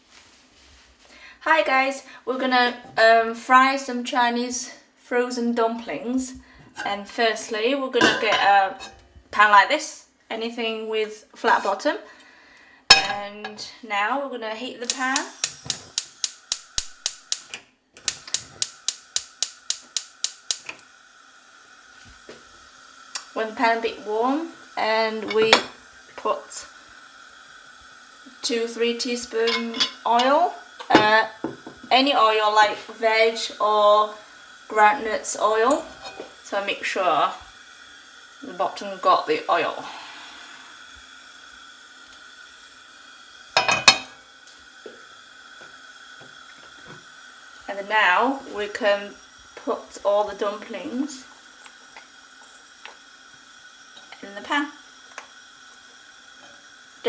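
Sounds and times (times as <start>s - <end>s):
faint gas burner hiss: 0.0s - 57.0s
gas hob igniter clicking: 14.8s - 20.9s, 35.6s - 36.4s.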